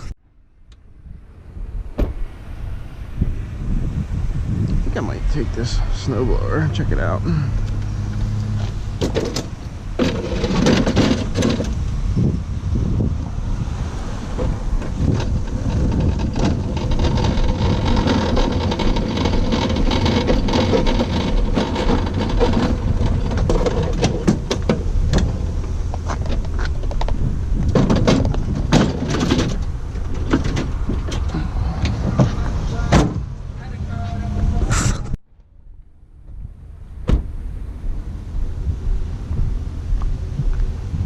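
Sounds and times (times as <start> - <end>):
knocks and rattles of objects: 8.6 - 11.8, 14.4 - 33.3.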